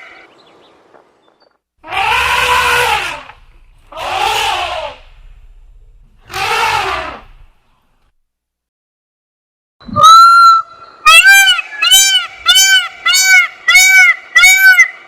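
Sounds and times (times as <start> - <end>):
animal calling roughly: 1.8 - 5.3, 6.2 - 7.4
low rumble: 2.1 - 8.1.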